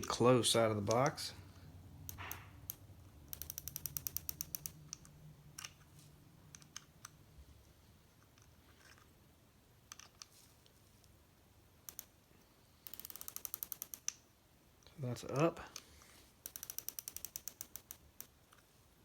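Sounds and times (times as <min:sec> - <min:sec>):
turret detent clicks: 0:02.1 - 0:05.8, 0:11.8 - 0:12.2, 0:12.8 - 0:14.2, 0:15.7 - 0:18.6.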